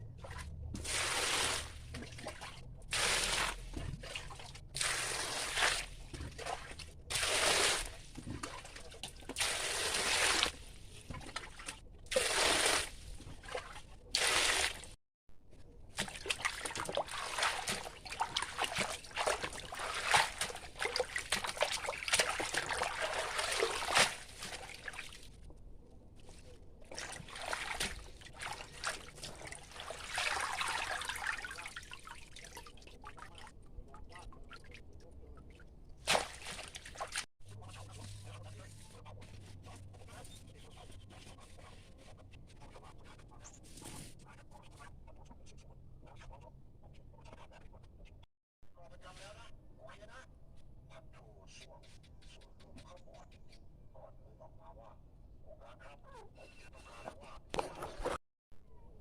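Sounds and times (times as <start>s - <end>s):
water trickling and splashing: 0.1s - 15.0s, 15.9s - 25.4s, 26.8s - 37.3s.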